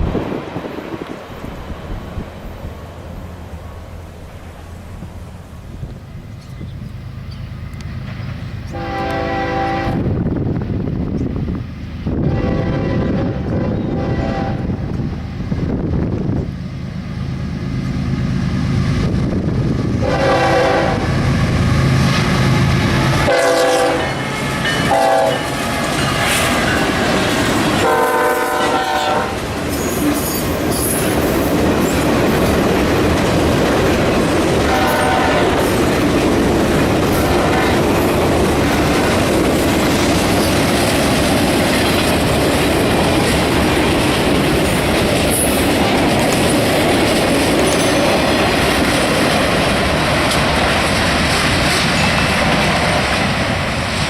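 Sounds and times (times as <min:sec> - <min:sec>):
freight cars clickety-clack on rails: 0:00.0 - 0:54.0
train rumble: 0:00.0 - 0:54.0
train air horn blasts: 0:08.7 - 0:10.1, 0:12.2 - 0:14.8, 0:20.0 - 0:21.2, 0:22.9 - 0:25.6, 0:27.8 - 0:30.4, 0:34.7 - 0:35.7, 0:37.1 - 0:37.9.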